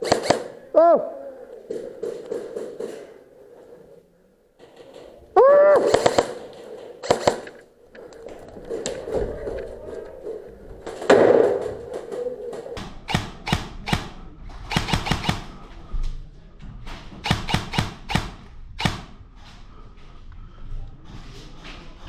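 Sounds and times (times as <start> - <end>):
airsoft guns firing: 0.0 - 0.7, 5.8 - 7.7, 12.8 - 15.6, 17.2 - 19.2.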